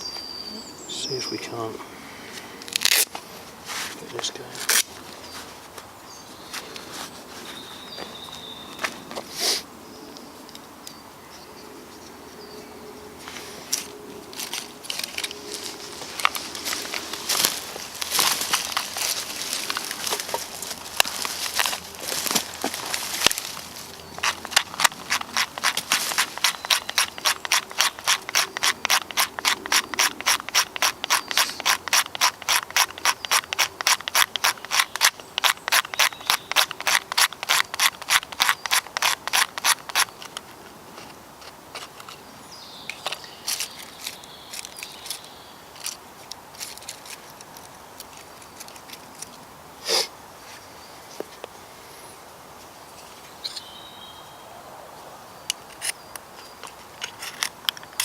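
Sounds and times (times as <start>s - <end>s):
hand tool rasping strokes: 13.3s - 40.3s.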